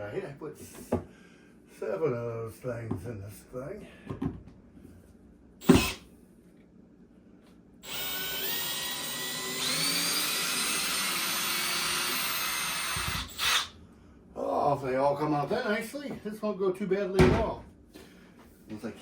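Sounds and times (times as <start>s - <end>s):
drill click: 5.6s - 6.0s, 7.8s - 13.7s
drill motor whining: 5.6s - 6.0s, 7.8s - 13.7s.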